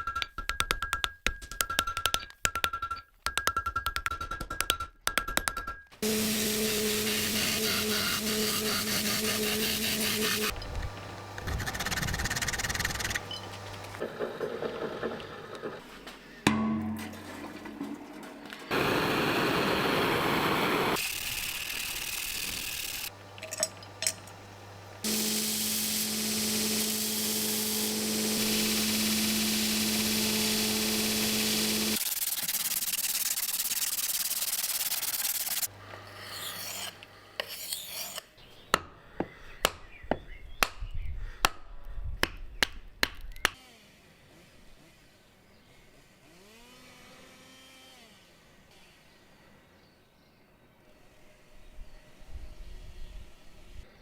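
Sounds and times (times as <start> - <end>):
grinding on steel: 6.0 - 15.6, 21.0 - 32.0
motor hum: 6.0 - 15.9, 18.7 - 32.0.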